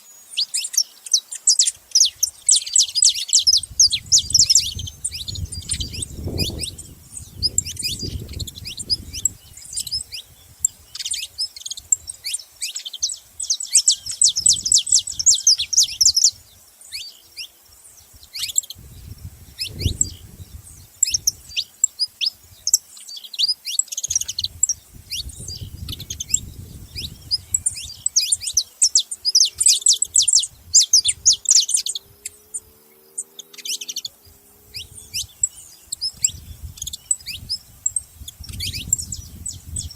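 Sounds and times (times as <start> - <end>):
finches chirping and singing: 0.0 - 39.9
low rumbling noise: 18.8 - 20.9.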